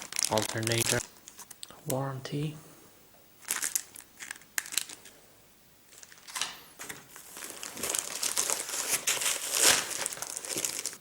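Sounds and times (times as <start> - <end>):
packaging crinkling and rustling: 0.0 - 1.7, 3.4 - 5.1, 5.9 - 11.0.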